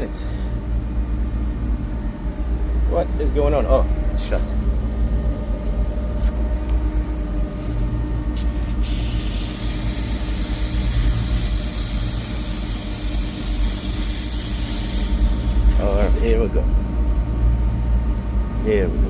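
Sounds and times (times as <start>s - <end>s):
steady low rumble: 0.4s - 19.0s
gas hissing from hose: 7.0s - 16.3s.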